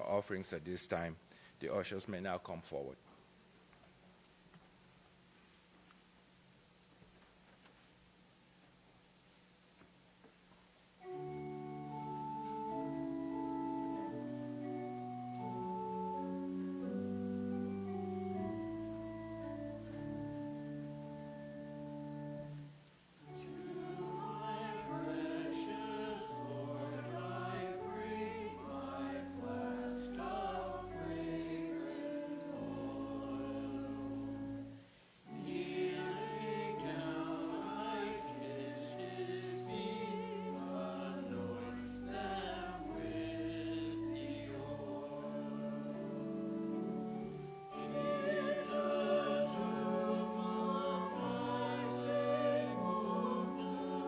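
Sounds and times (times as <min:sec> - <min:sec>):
choir singing: 0:23.2 - 0:54.0.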